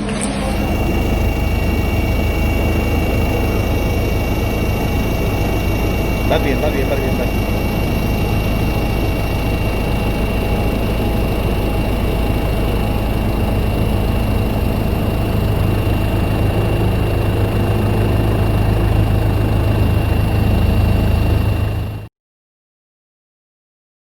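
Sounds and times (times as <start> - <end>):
large engine rumbling: 0.0 - 22.1.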